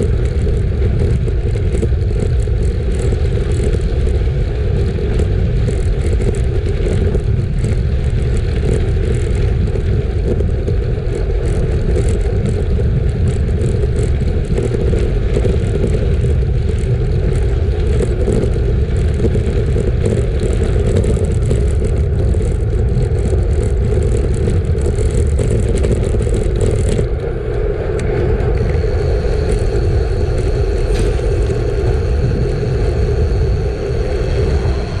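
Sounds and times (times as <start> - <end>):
wind buffeting microphone: 0.0 - 35.0
bike tyres crunching on gravel: 28.1 - 35.0
faint high whine: 28.2 - 35.0.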